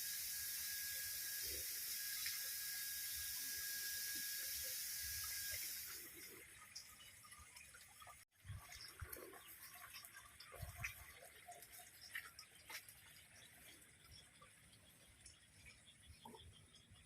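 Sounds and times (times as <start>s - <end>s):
faint scattered ticks: 10.8s - 17.0s.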